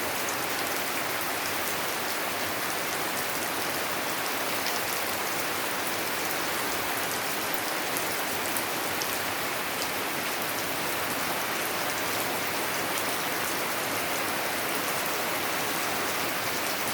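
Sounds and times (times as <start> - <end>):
steady rain falling: 0.0 - 16.9.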